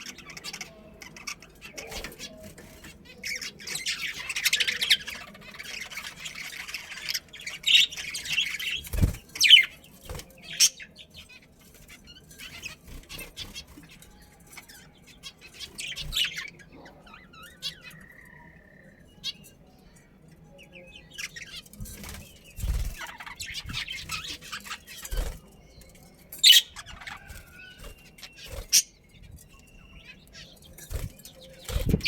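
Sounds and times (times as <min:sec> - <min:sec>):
budgerigars chirping and squawking: 0:00.0 - 0:32.0.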